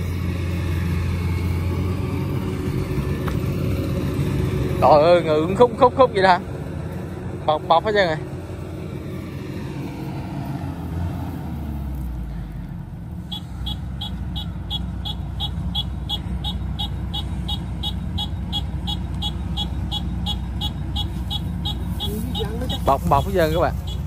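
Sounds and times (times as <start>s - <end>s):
harvester engine rumbling: 0.0s - 24.0s
rapid regular beeping: 13.2s - 24.0s.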